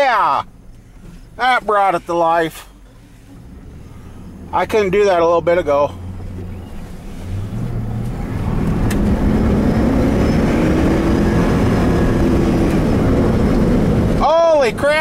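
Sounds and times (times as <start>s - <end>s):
truck engine accelerating hard: 0.2s - 15.0s.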